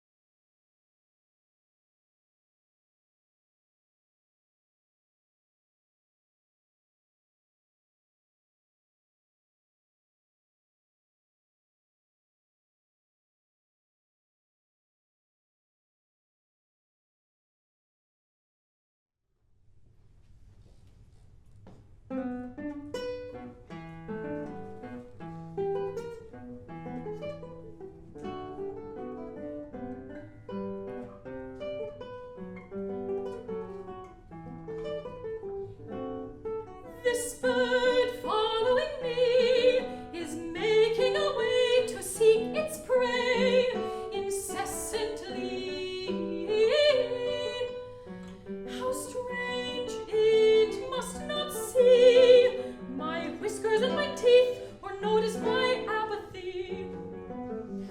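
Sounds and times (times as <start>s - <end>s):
plucked guitar: 21.6s - 57.9s
woman singing with vibrato: 37.0s - 47.9s, 48.7s - 57.0s.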